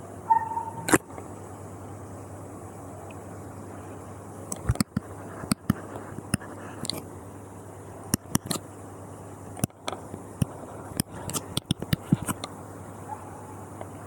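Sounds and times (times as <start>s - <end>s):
low hum: 0.0s - 4.5s.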